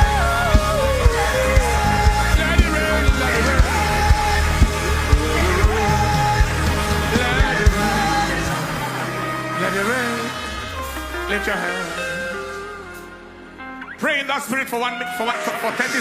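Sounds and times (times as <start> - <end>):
steady drum beat: 0.0 - 12.0
person singing melody: 0.0 - 13.3
gospel worship music: 0.0 - 16.0.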